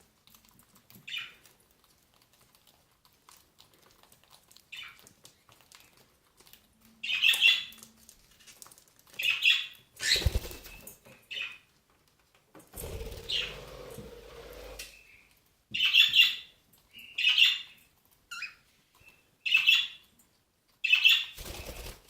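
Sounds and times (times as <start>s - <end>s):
wing flapping: 10.0s - 10.9s, 12.8s - 14.9s, 21.4s - 22.0s
cockatiels chirping and squawking: 13.3s - 13.6s, 17.1s - 18.6s.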